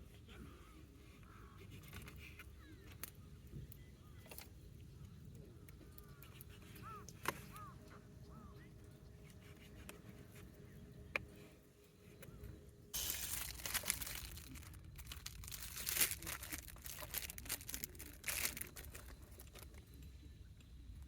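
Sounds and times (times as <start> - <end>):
packaging crinkling: 13.0 - 20.0.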